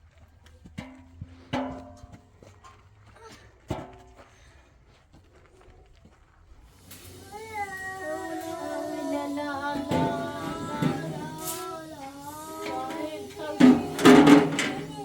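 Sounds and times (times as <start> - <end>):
person singing slow tune: 7.1 - 15.0.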